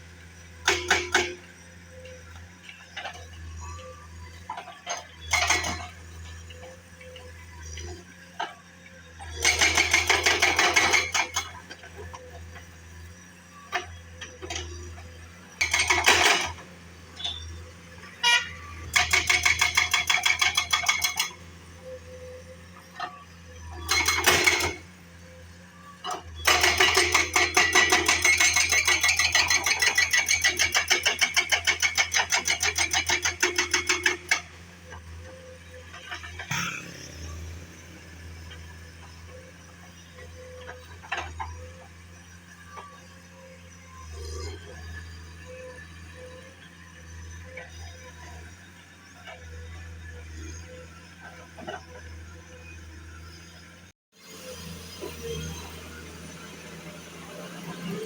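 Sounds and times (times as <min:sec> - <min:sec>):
road-work machine pounding: 0:00.4 - 0:02.4, 0:04.4 - 0:08.6, 0:09.2 - 0:13.0, 0:13.6 - 0:21.8, 0:23.7 - 0:25.3, 0:26.0 - 0:41.9.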